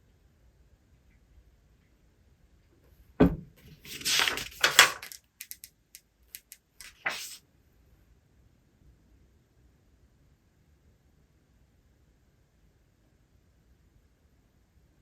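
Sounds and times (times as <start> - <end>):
thump on desk: 3.2 - 3.5.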